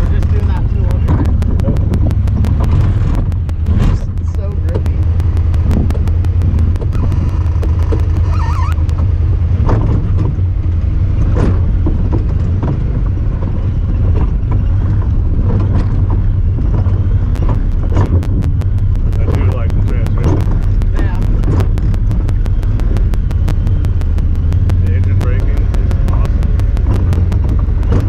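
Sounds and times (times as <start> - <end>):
off-road vehicle engine rumbling: 0.0 - 28.0.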